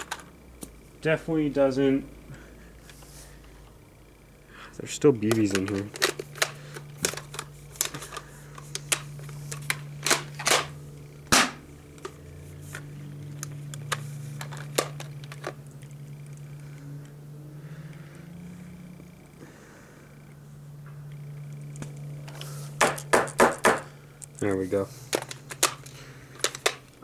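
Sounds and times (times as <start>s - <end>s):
steady low hum: 0.0s - 27.0s
airsoft shotgun plastic clicking: 5.2s - 10.7s.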